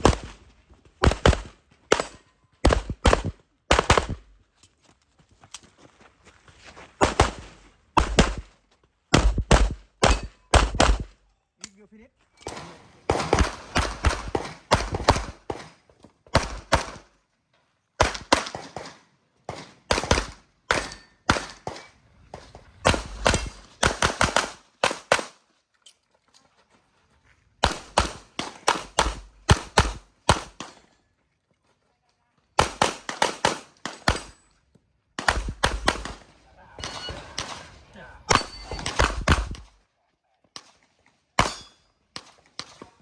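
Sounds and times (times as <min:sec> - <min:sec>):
pistol firing rapid shots: 0:00.0 - 0:00.3, 0:01.0 - 0:04.3, 0:08.0 - 0:08.4, 0:09.1 - 0:11.2, 0:13.1 - 0:15.7, 0:16.4 - 0:17.1, 0:18.0 - 0:21.9, 0:22.8 - 0:25.4, 0:27.6 - 0:30.8, 0:32.6 - 0:34.3, 0:35.2 - 0:36.4, 0:38.3 - 0:39.7.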